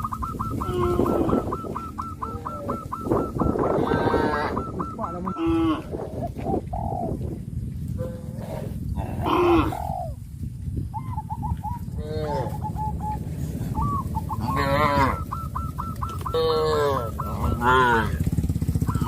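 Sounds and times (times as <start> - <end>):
poultry calling: 0.0 - 10.2, 11.0 - 19.0
cattle mooing: 3.7 - 5.9, 8.0 - 9.9, 11.9 - 12.6, 14.4 - 15.3, 16.2 - 18.3.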